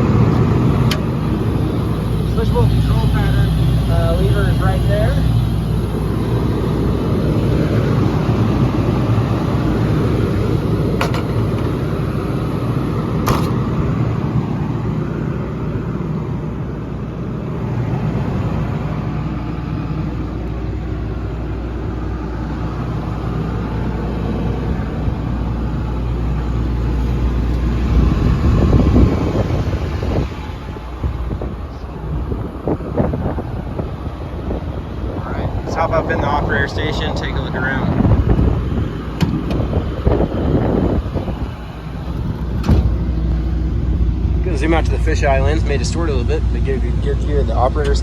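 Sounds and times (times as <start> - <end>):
excavator diesel engine running: 0.0 - 48.0.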